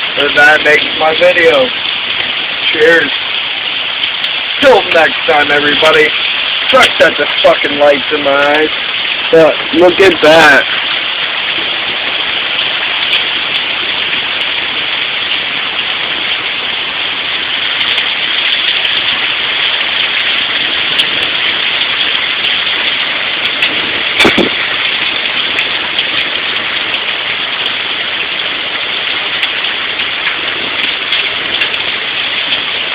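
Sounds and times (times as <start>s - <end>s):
rain pouring: 0.0s - 32.9s
sharp knock: 24.2s - 24.6s.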